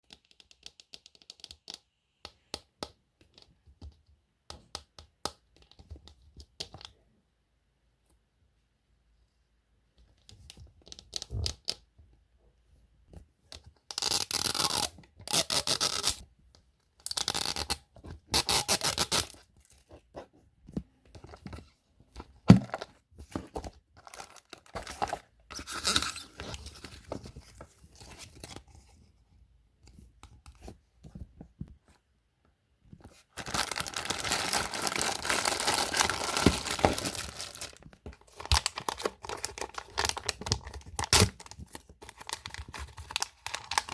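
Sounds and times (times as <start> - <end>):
packaging being torn: 33.4 - 37.8, 38.4 - 43.9.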